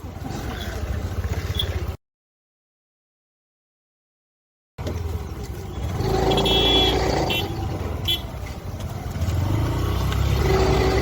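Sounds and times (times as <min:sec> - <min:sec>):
traffic rumble: 0:00.0 - 0:02.0, 0:04.8 - 0:11.0
vehicle horn toots: 0:06.1 - 0:08.4.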